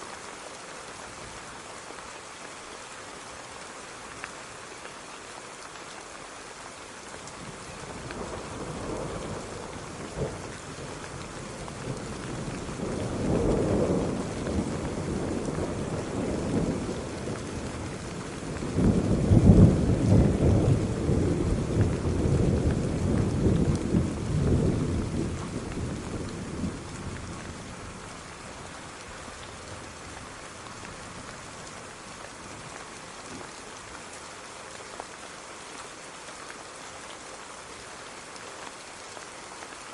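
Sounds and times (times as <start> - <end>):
steady rain: 0.0 - 39.9
rolling thunder: 11.8 - 17.1, 18.5 - 27.4.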